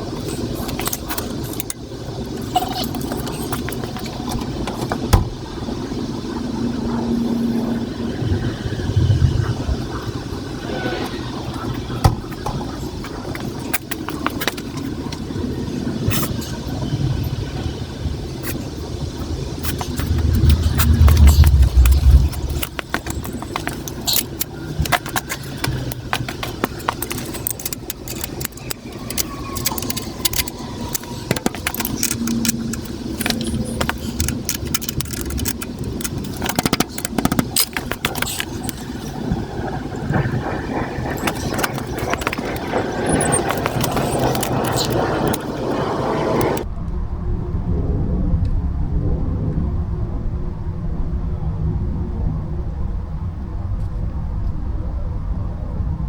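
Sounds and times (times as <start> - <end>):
metal chain and tools clinking: 0.0 - 5.1, 19.6 - 39.3, 41.0 - 46.6
steady low rumble: 0.0 - 56.0.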